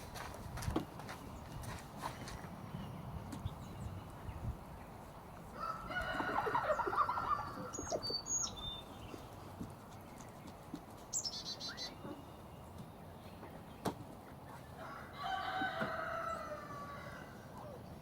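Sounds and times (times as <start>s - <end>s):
rooster crowing: 5.6s - 7.8s, 14.8s - 17.8s.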